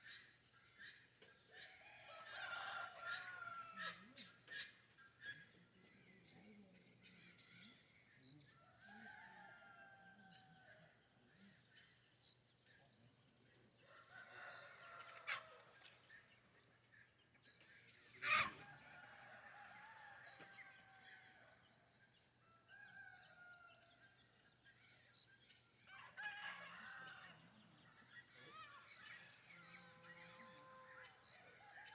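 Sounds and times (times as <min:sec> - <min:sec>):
faint rooster crowing: 0:01.7 - 0:04.2, 0:08.6 - 0:11.0, 0:13.8 - 0:16.0, 0:18.2 - 0:21.8, 0:22.4 - 0:24.2, 0:25.9 - 0:28.4, 0:29.2 - 0:31.9.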